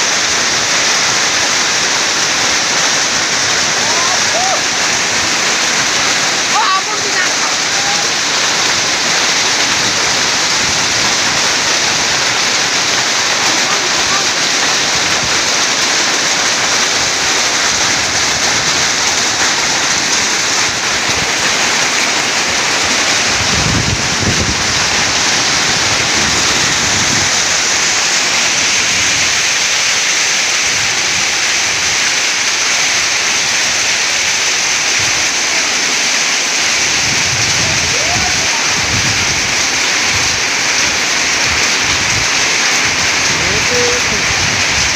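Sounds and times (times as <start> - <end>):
hail and rain pelting: 0.0 - 44.9.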